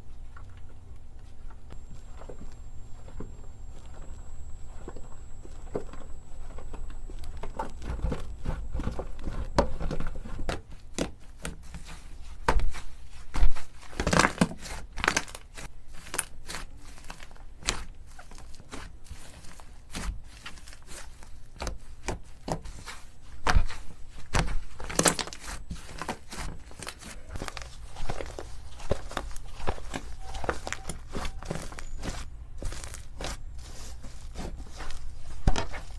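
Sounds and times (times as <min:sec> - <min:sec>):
slime squeezed by hand crackling: 0:21.8 - 0:35.9.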